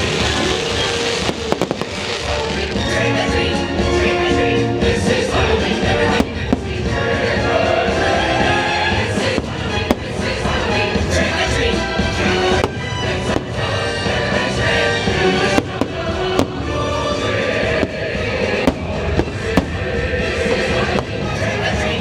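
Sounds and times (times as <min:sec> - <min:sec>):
firework shells bursting: 0:00.0 - 0:02.7, 0:06.1 - 0:07.0, 0:15.5 - 0:16.8, 0:17.8 - 0:21.3
orchestral music: 0:00.0 - 0:22.0.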